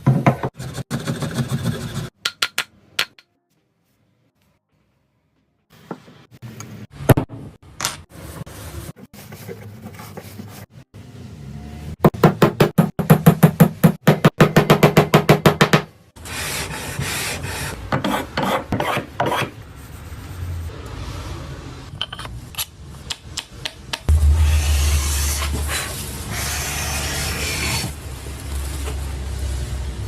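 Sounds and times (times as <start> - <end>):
rough scraping: 24.1 - 28.0.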